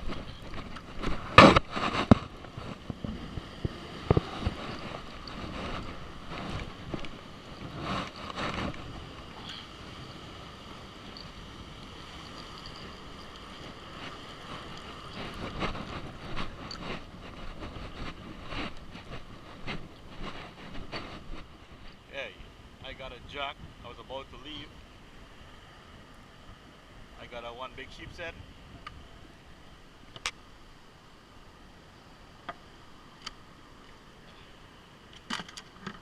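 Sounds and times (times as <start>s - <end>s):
wind buffeting microphone: 0.0s - 22.1s, 22.8s - 24.1s
ocean surf: 0.0s - 36.0s.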